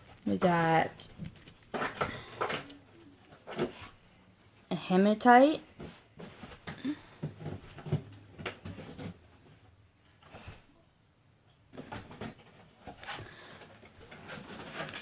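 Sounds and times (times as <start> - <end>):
packaging rustling and clicking: 1.0 - 3.7, 11.8 - 15.0.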